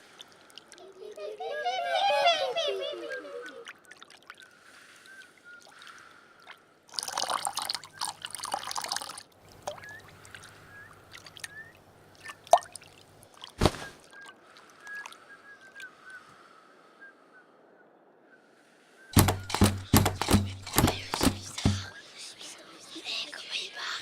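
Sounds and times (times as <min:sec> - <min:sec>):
water dripping into water: 0:00.0 - 0:00.9, 0:03.6 - 0:15.2
splashing water: 0:03.5 - 0:15.2, 0:19.2 - 0:22.0
sharp thump: 0:13.6 - 0:14.0, 0:19.2 - 0:21.9.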